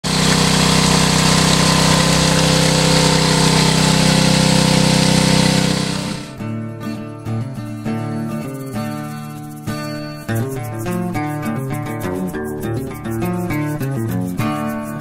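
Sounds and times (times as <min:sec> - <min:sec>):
small gasoline engine running: 0:00.0 - 0:06.4
acoustic guitar music: 0:00.0 - 0:15.0.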